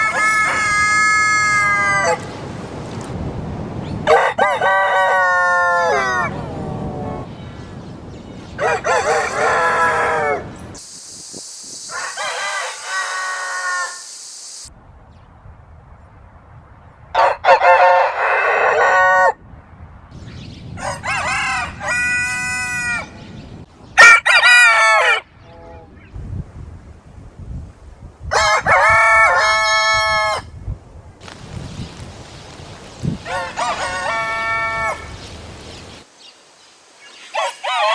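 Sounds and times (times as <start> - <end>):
roosters crowing: 0.0 - 2.3, 4.0 - 7.3, 8.6 - 10.6, 11.9 - 14.2, 17.2 - 19.4, 20.8 - 23.2, 24.0 - 25.3, 28.3 - 30.4, 33.1 - 35.3, 37.3 - 37.9
high hiss: 10.6 - 14.7.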